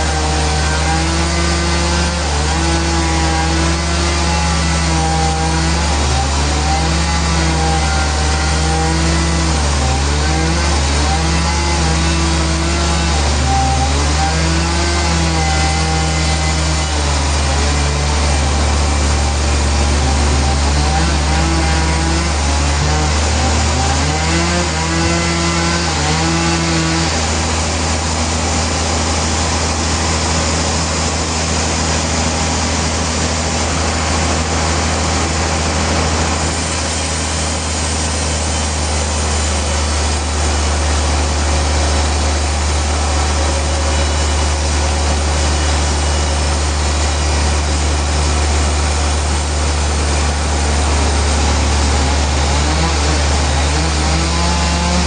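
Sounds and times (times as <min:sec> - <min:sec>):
saw cutting through log: 0:00.0 - 0:55.0
low engine drone: 0:16.1 - 0:55.0.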